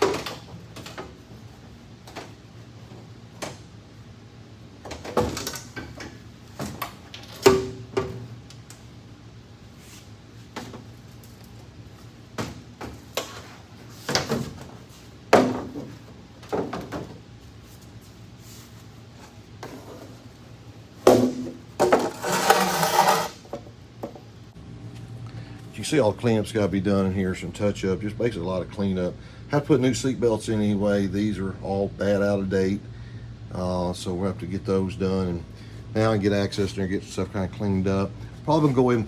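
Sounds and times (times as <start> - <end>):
parts knocking and clunking: 12.3 - 17.2, 21.0 - 24.3.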